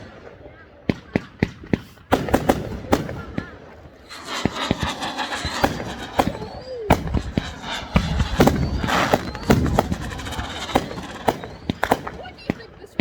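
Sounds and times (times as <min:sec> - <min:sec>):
fireworks bangs: 0:00.0 - 0:13.0
fireworks crackling: 0:01.2 - 0:13.0.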